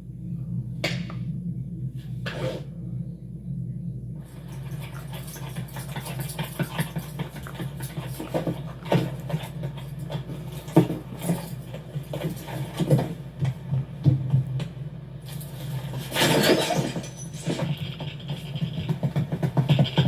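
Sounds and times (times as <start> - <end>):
low machine hum: 0.0 - 20.0
knocks and clatters: 15.4 - 20.0.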